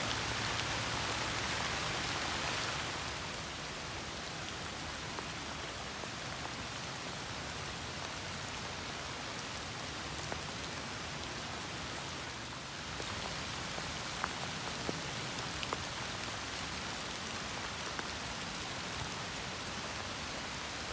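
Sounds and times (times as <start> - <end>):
rain falling on leaves: 0.0 - 20.9.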